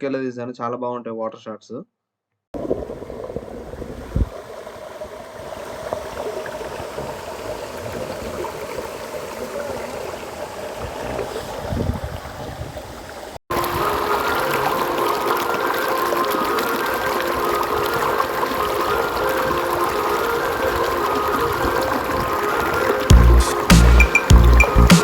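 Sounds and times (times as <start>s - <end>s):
waterfall rushing: 13.5s - 25.0s.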